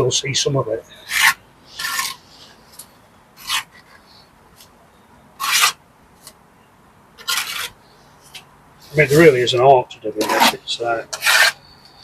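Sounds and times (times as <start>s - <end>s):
trowel scraping mortar on brick: 1.1s - 2.2s, 3.4s - 4.0s, 5.4s - 5.8s, 7.2s - 7.8s, 10.2s - 11.6s.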